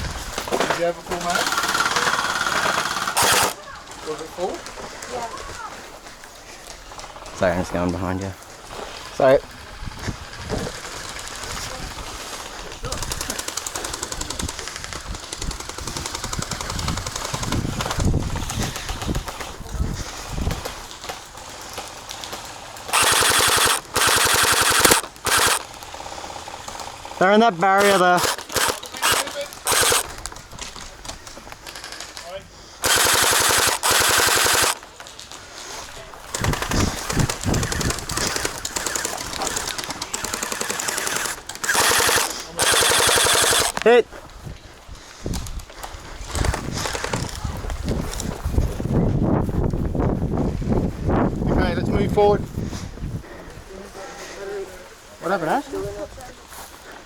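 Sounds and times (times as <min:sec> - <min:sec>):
gel blasters firing full-auto: 0:01.4 - 0:03.6, 0:22.9 - 0:25.7, 0:27.8 - 0:30.1, 0:32.8 - 0:34.8, 0:36.3 - 0:43.8.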